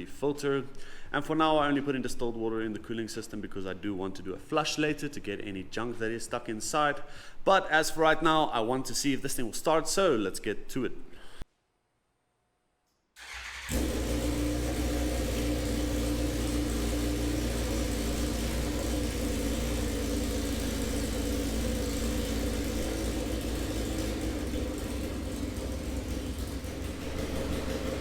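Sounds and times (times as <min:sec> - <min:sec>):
motorcycle engine starting: 0:13.2 - 0:28.0.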